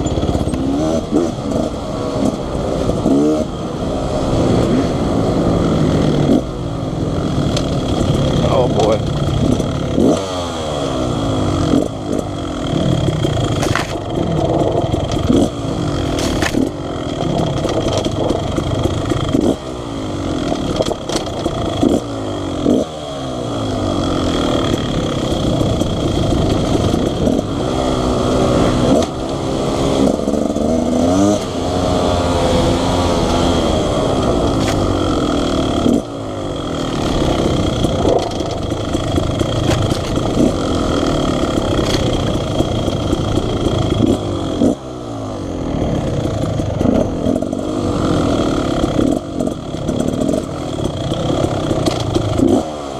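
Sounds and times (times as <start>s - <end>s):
dirt bike engine revving: 0.0s - 52.9s
knocks and clatter: 11.7s - 19.6s, 37.0s - 44.2s.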